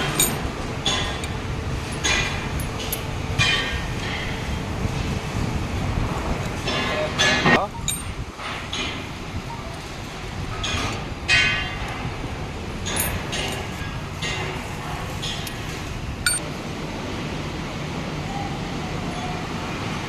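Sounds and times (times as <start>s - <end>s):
metal clinking: 0.0s - 1.3s, 7.8s - 9.0s, 12.8s - 14.5s, 15.2s - 16.4s
steady background noise: 0.0s - 20.0s.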